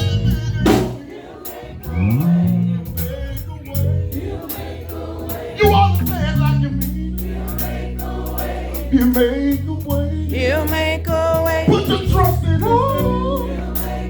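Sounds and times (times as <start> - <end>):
gospel band playing: 0.0 - 14.0
group singing: 0.0 - 14.0.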